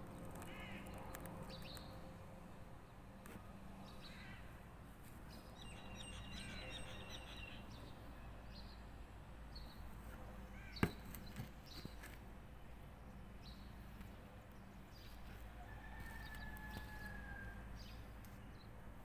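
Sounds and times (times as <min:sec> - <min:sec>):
birds chirping and calling: 0:05.6 - 0:07.9.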